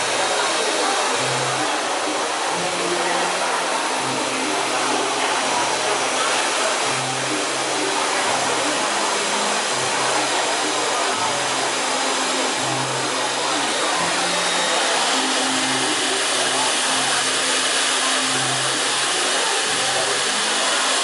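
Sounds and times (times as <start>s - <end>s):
hair dryer running: 0.0s - 21.0s.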